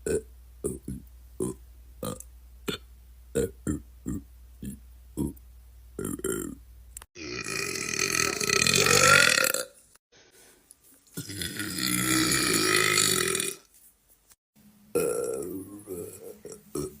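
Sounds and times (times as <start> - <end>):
man burping: 0.0 - 5.4, 6.0 - 6.6, 7.2 - 9.8, 11.2 - 13.6, 15.0 - 17.0.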